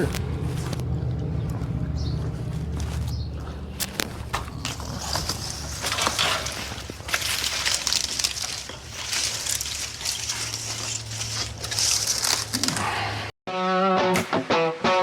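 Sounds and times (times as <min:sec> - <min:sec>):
demolition debris crunching: 0:00.0 - 0:13.2
sharp wood cracks: 0:02.6 - 0:13.1.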